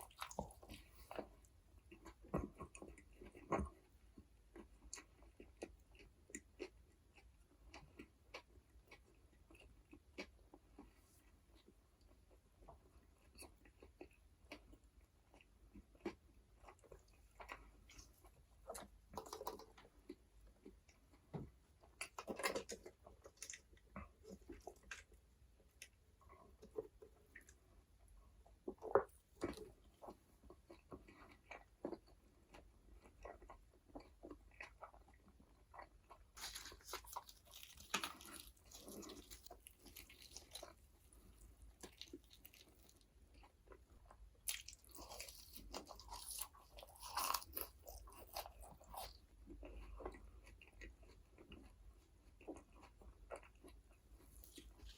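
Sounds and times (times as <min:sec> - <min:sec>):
chewing and biting food: 0:00.0 - 0:54.9
soft crunches: 0:36.4 - 0:43.5.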